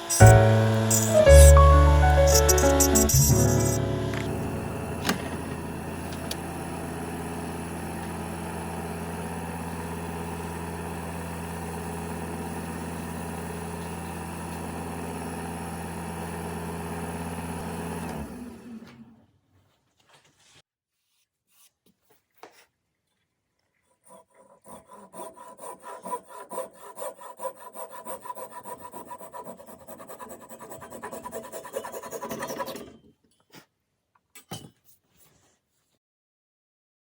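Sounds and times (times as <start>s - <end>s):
hand tool rasping on wood: 0.0s - 3.8s, 24.0s - 32.9s.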